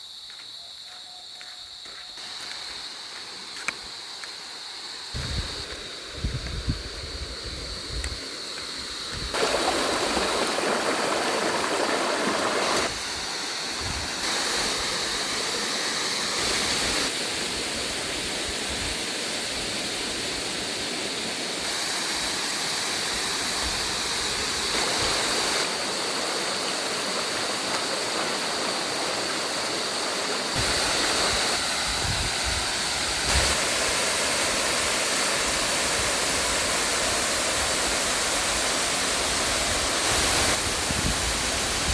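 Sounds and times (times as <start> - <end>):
rushing water: 9.3 - 41.9.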